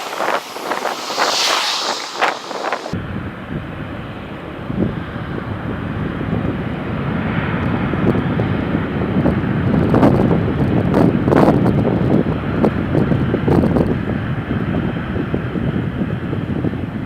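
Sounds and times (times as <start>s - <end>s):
jet engines roaring: 0.0s - 11.3s
wind buffeting microphone: 0.0s - 17.0s.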